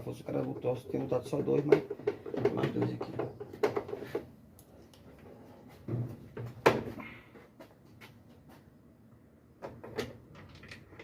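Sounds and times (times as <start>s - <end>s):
parts and tools knocking: 0.3s - 4.3s.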